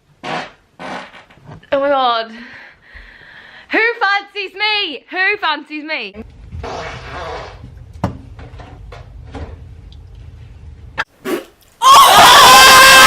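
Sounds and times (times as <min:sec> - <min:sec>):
woman farting: 0:00.2 - 0:01.7.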